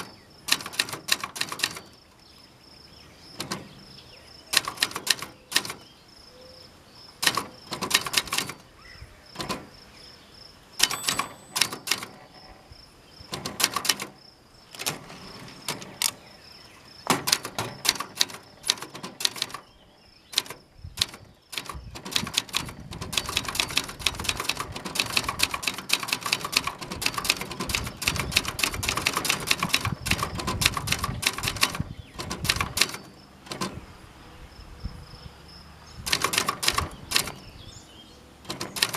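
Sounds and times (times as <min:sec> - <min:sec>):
manual typewriter key strikes: 0:00.0 - 0:02.0, 0:04.5 - 0:05.9, 0:07.2 - 0:08.7, 0:09.4 - 0:09.7, 0:10.8 - 0:12.3, 0:13.3 - 0:14.2, 0:17.1 - 0:33.8, 0:36.1 - 0:37.4, 0:38.4 - 0:38.9.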